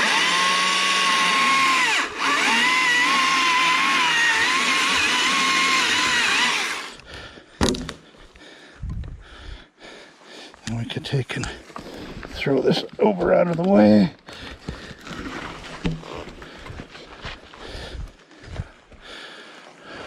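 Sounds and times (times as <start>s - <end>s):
electric chainsaw cutting log: 0.0s - 7.0s.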